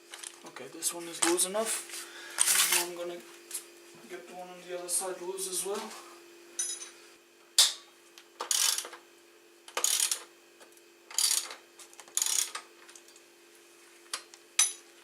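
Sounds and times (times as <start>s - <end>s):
faint steady hum: 0.0s - 15.0s
ratchet wrench ratcheting: 8.4s - 9.0s, 9.7s - 10.3s, 11.1s - 12.6s.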